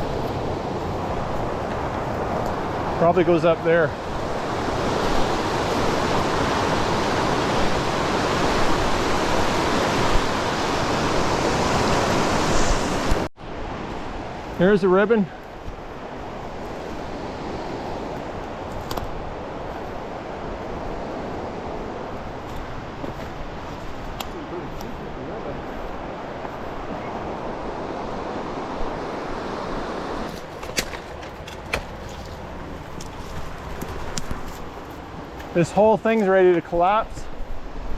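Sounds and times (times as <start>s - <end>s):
creek water rushing: 0.0s - 37.9s
sharp snaps: 24.1s - 24.4s.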